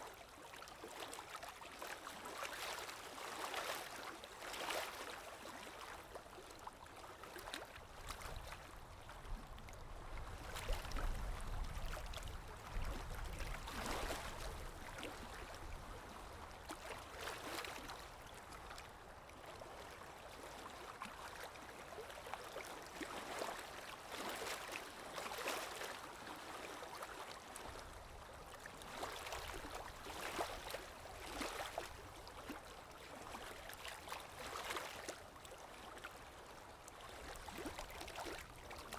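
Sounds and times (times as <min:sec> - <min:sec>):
small waves lapping: 0:00.0 - 0:38.9
water splashes: 0:10.3 - 0:18.9, 0:28.8 - 0:36.0, 0:36.9 - 0:38.9.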